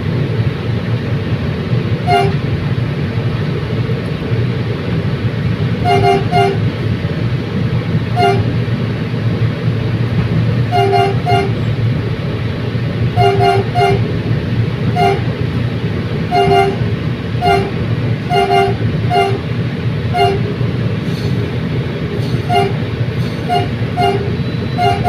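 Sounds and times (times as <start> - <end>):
train rumbling: 0.0 - 25.0
train horn toots: 2.0 - 2.6, 5.8 - 6.7, 8.1 - 8.6, 10.7 - 11.7, 13.2 - 14.2, 14.9 - 15.3, 16.3 - 19.5, 20.1 - 20.6, 22.2 - 25.0.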